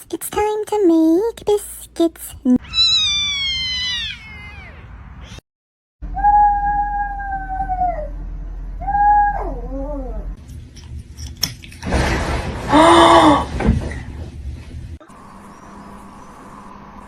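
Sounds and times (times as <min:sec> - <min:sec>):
cat yowling: 0:02.6 - 0:05.4.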